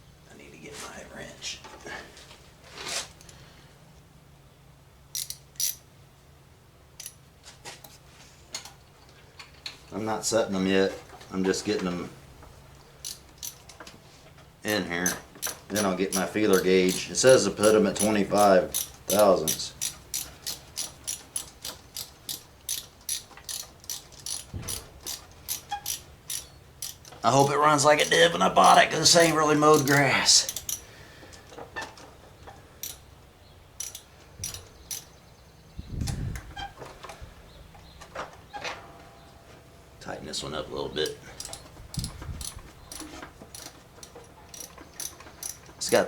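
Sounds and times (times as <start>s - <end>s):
ratchet wrench clicking: 5.1s - 5.9s, 7.0s - 7.2s, 13.0s - 13.7s, 15.0s - 30.9s, 32.8s - 33.1s, 33.8s - 35.1s, 41.4s - 45.9s
metal hand tools clinking: 5.2s - 5.8s, 15.0s - 31.5s, 32.8s - 33.1s, 33.8s - 35.1s, 41.0s - 46.0s.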